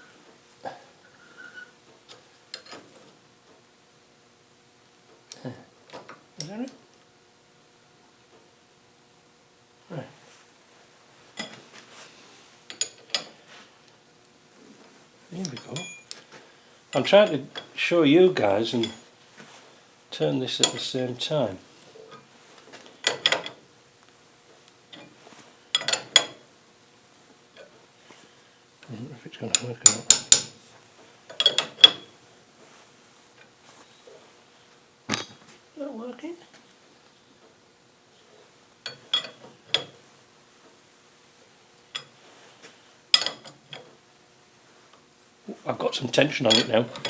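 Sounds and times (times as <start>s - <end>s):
spanners clinking on metal: 15.4s - 16.2s, 18.7s - 19.1s, 20.6s - 20.9s, 23.0s - 23.6s, 25.7s - 26.4s, 29.5s - 30.6s, 31.3s - 32.1s, 38.9s - 39.9s, 43.2s - 43.8s, 46.4s - 47.0s
spanner clicking on metal: 29.5s - 30.5s, 31.3s - 32.0s.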